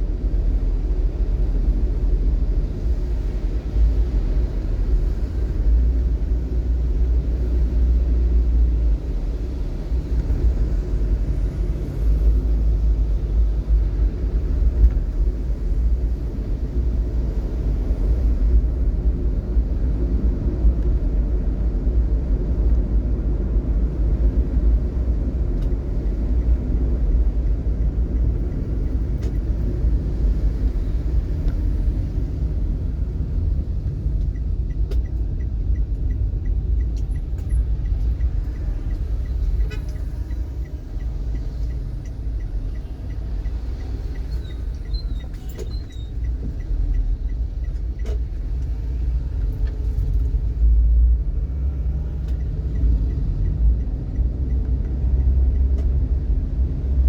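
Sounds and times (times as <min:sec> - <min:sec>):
vehicle rumbling on the move: 0:00.0 - 0:57.0
light regular ticking: 0:33.4 - 0:56.7.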